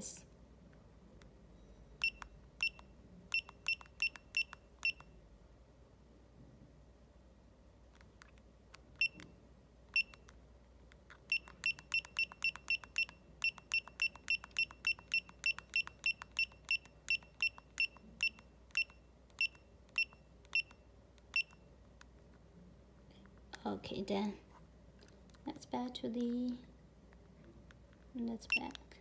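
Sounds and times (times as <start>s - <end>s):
pager key-press beeps: 2.0s - 5.2s, 9.0s - 10.4s, 11.3s - 21.7s, 28.5s - 28.8s.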